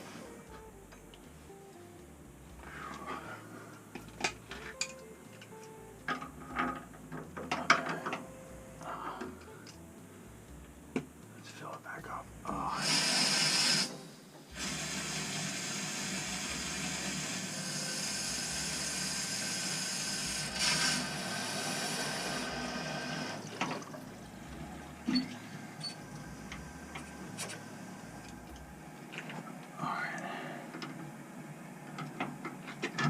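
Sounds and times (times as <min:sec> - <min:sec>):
water rushing through pipes: 0:12.8 - 0:28.4.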